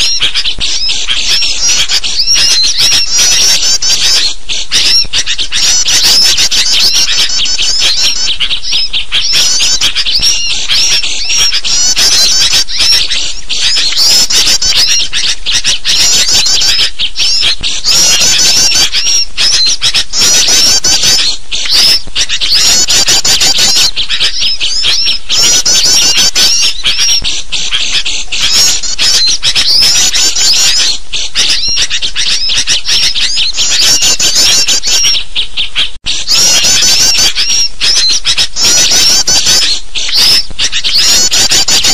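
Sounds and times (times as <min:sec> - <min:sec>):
bulbul calls: 0:00.0 - 0:41.9
small birds chattering and chirping: 0:00.0 - 0:41.9.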